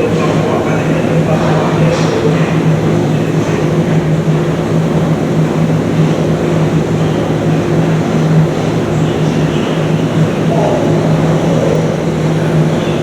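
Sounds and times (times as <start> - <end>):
electric train humming: 0.0 - 13.0
rumbling noise: 10.3 - 13.0.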